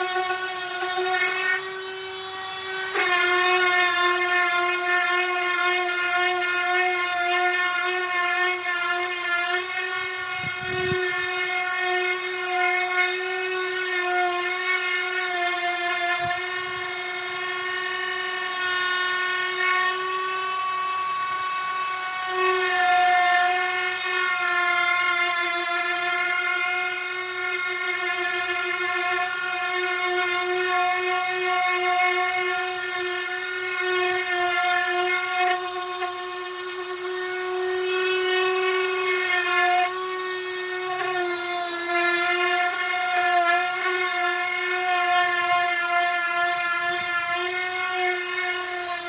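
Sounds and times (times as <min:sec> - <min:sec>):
power sander whining: 0:00.0 - 0:49.0.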